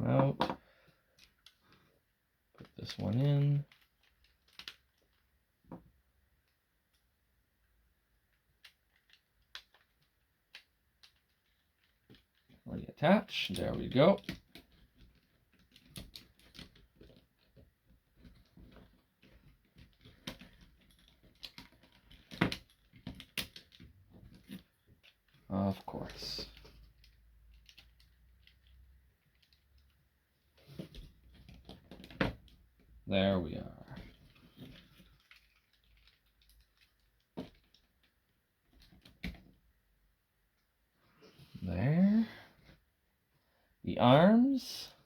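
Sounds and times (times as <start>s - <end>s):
plastic toy parts clicking: 8.4s - 12.5s, 18.6s - 25.4s, 27.0s - 29.9s, 34.7s - 38.1s
plastic toy parts ticking: 35.0s - 38.1s.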